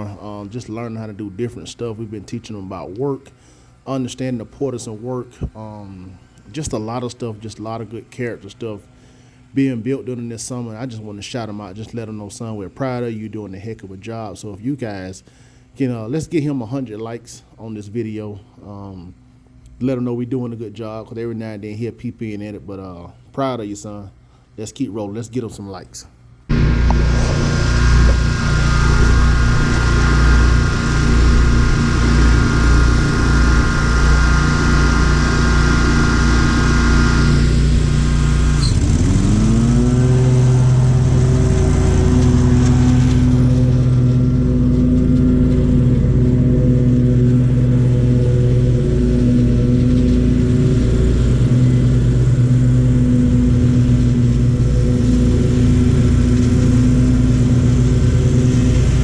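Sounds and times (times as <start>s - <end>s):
lawn mower engine running: 26.5s - 59.0s.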